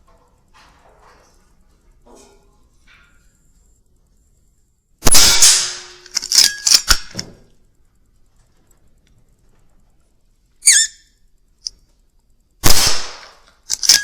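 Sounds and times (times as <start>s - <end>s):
air rifle shot: 5.0s - 6.0s, 12.6s - 13.4s.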